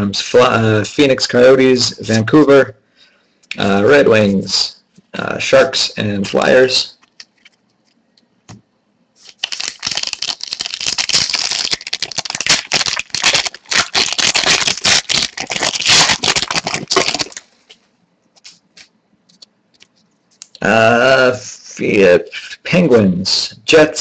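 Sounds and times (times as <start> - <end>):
wrapper crinkling: 9.2 - 17.8.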